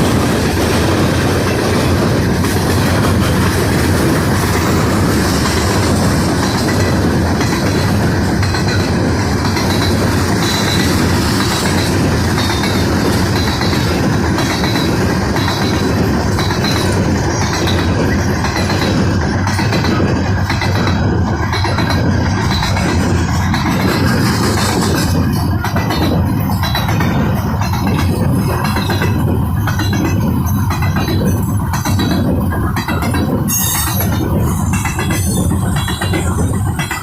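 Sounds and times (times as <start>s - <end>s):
freight train rumbling: 0.0s - 37.0s
wheels clattering over rail joints: 0.0s - 37.0s
high wheel squeal: 33.4s - 34.2s.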